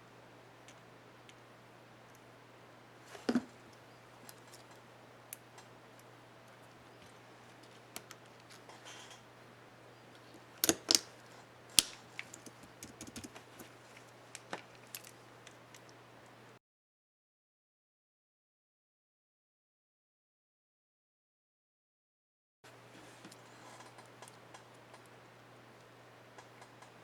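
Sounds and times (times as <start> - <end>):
keyboard keycap clicks and snaps: 10.6 - 11.1.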